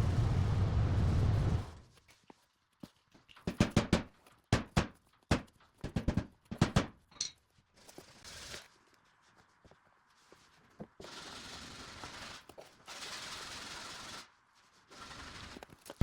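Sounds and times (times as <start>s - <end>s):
sharp knocks and clacks: 3.4s - 7.4s.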